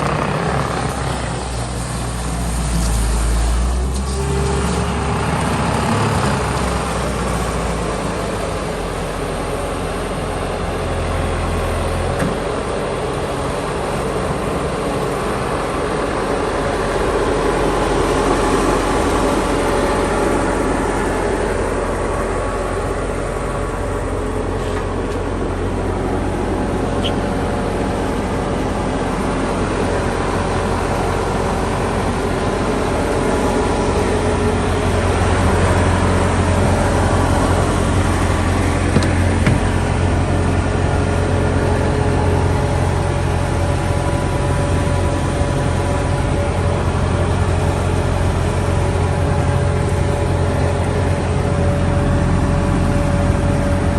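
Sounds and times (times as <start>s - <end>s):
diesel engine running: 0.0s - 53.9s.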